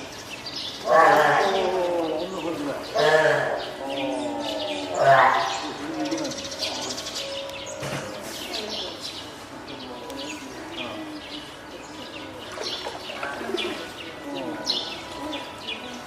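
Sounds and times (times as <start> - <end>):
seal pup calling: 0.8 - 2.1, 3.0 - 5.6.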